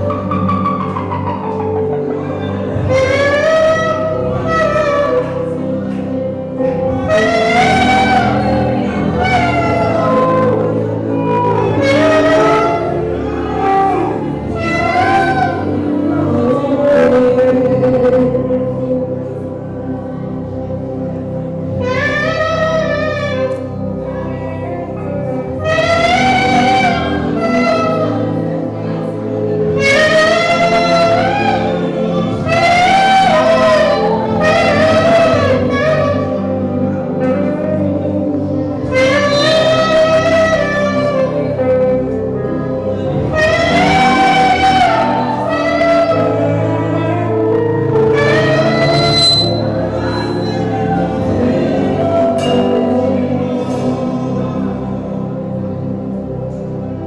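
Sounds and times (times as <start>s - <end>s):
band accompaniment: 0.0s - 16.6s, 21.6s - 24.0s
gospel singing: 0.0s - 57.0s
instrumental accompaniment: 0.0s - 57.0s.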